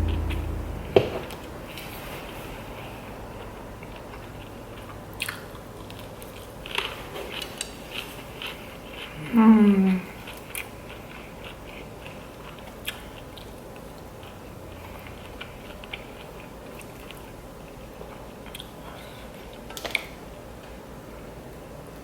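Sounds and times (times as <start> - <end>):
person chewing crunchy food: 3.4 - 9.4, 10.0 - 20.0.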